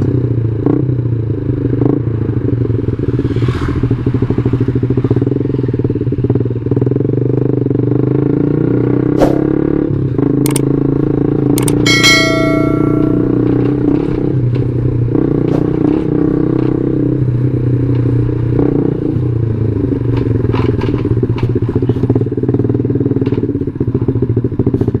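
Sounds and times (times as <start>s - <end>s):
motorcycle engine running: 0.0s - 25.0s
clicks and rattles: 11.6s - 12.0s
high ringing tone: 11.6s - 13.9s.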